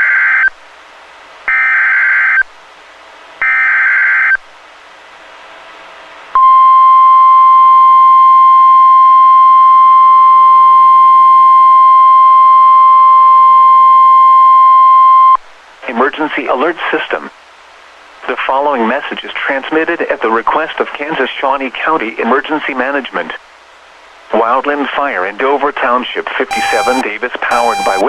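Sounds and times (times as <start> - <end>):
data burst tones: 26.5 - 28.0
steady warning alarm tone: 26.5 - 28.0.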